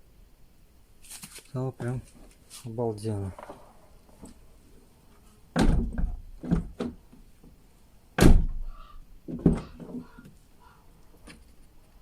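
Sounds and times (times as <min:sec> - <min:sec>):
car door shutting thuds: 0:05.6 - 0:07.0, 0:08.2 - 0:08.7
door knocks and clicks: 0:05.6 - 0:07.0.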